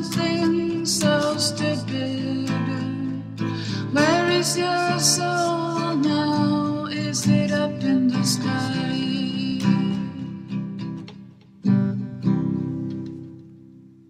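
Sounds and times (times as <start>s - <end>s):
acoustic guitar strummed chords: 0.0s - 14.0s.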